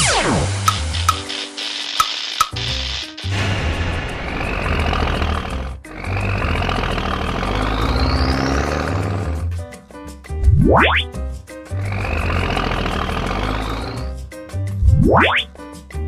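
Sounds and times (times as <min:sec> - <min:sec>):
cartoon background music: 0:00.0 - 0:16.0.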